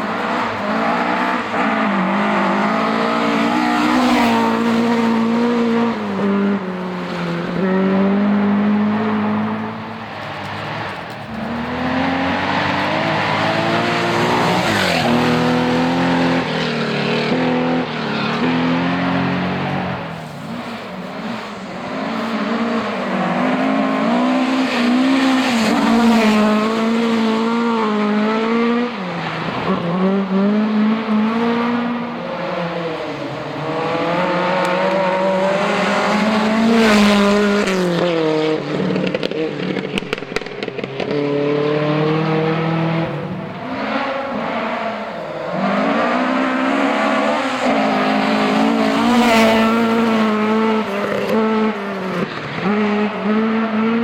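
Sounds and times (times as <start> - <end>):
rally car engines revving: 0.0 - 54.0.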